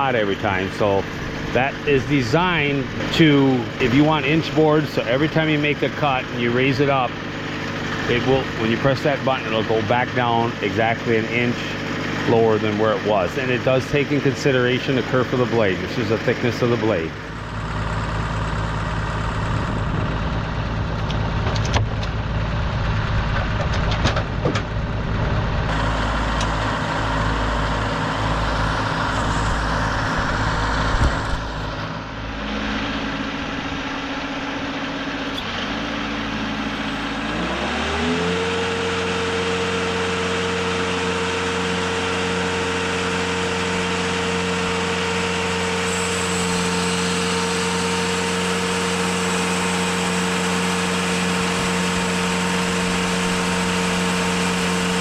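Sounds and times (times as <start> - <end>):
sawmill engine running: 0.0 - 55.0
clunks: 23.3 - 24.8.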